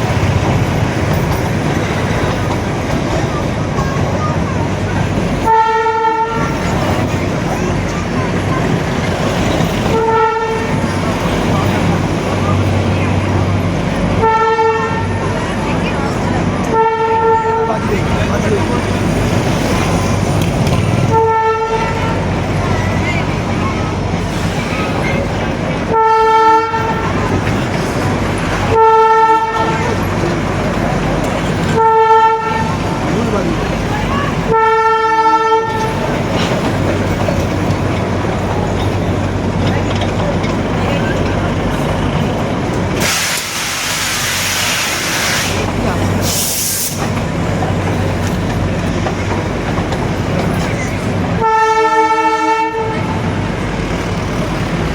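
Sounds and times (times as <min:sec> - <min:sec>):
train running noise: 0:00.0 - 0:54.9
train horn blast: 0:05.4 - 0:06.6, 0:09.9 - 0:10.9, 0:14.2 - 0:15.4, 0:16.6 - 0:17.8, 0:21.1 - 0:22.3, 0:25.8 - 0:27.2, 0:28.6 - 0:30.1, 0:31.7 - 0:32.9, 0:34.4 - 0:36.0, 0:51.4 - 0:53.2
short hiss: 0:43.0 - 0:45.6.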